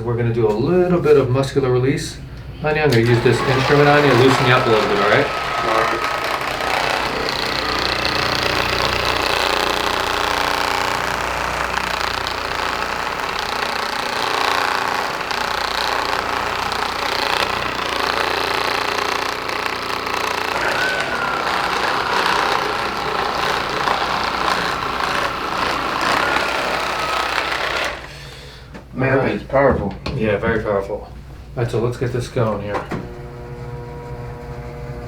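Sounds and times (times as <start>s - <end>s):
steady whine: 2.9s - 28.3s
massage gun hammering buzz: 3.0s - 28.2s, 32.9s - 35.0s.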